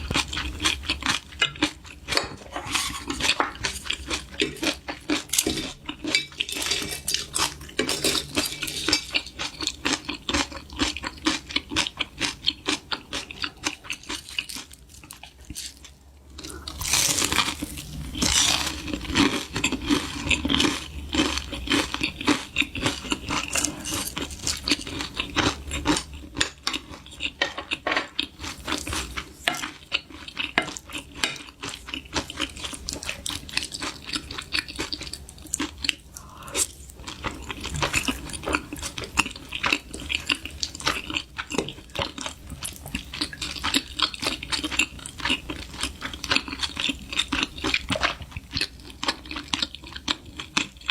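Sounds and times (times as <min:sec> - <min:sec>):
utensils clinking against dishes: 0:01.5 - 0:09.3.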